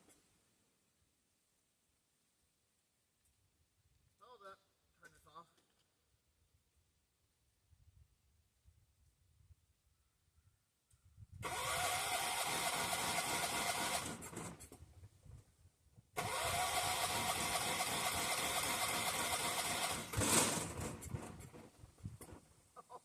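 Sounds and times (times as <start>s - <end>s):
mower engine cranking: 11.4s - 14.8s, 16.2s - 22.4s.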